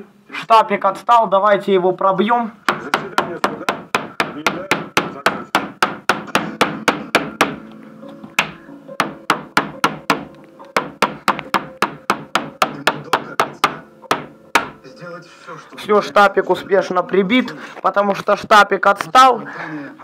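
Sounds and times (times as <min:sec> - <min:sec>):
hammer tapping sharp knocks: 0:02.6 - 0:07.7, 0:08.3 - 0:14.8.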